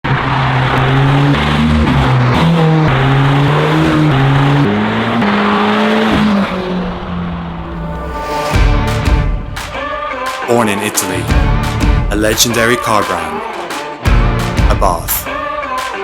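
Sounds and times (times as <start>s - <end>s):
car engine: 0.0s - 10.4s.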